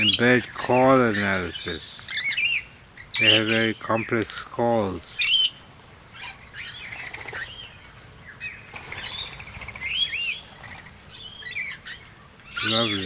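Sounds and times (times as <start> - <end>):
birds chirping and squawking: 0.0 - 13.0
wings flapping: 6.8 - 7.6, 8.6 - 11.1.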